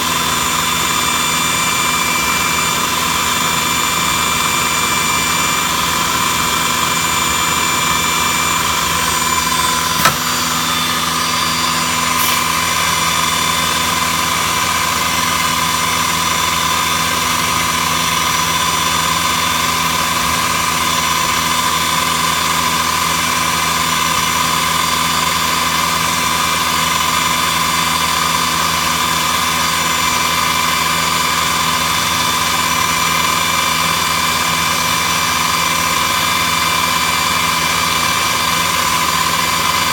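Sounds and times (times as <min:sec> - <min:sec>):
router motor whine: 0:00.0 - 0:19.9
sharp click: 0:09.8 - 0:10.4.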